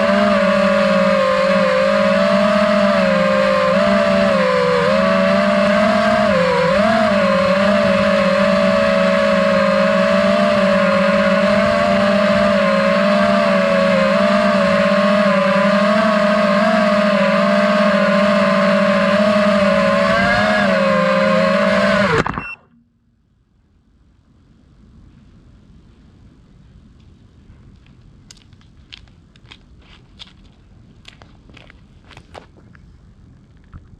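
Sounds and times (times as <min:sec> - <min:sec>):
drone motors whining: 0:00.0 - 0:22.8.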